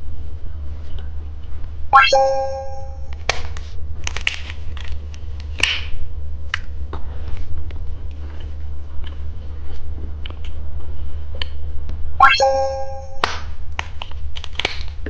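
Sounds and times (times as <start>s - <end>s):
low steady hum: 2.0s - 3.2s, 12.2s - 13.5s.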